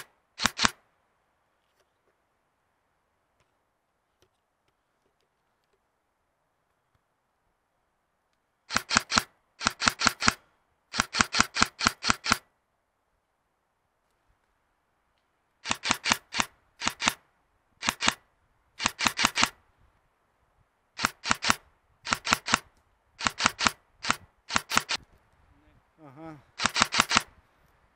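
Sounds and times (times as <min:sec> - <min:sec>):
airsoft gun firing bursts: 0:00.0 - 0:00.8, 0:08.7 - 0:12.4, 0:15.6 - 0:17.2, 0:17.8 - 0:18.2, 0:18.8 - 0:19.6, 0:21.0 - 0:25.0, 0:26.6 - 0:27.4.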